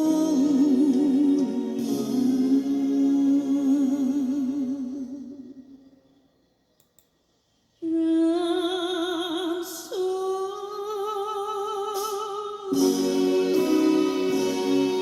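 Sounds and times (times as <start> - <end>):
woman singing with vibrato: 0.0 - 5.7, 7.8 - 15.0
backing music with plucked strings: 12.7 - 15.0.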